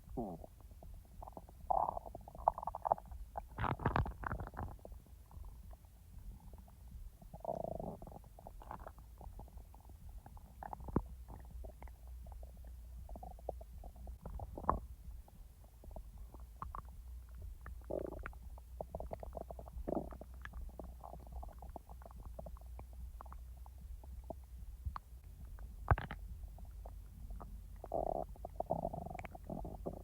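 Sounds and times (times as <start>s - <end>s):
stomach gurgling: 0.0s - 30.0s
low hum: 8.2s - 30.0s.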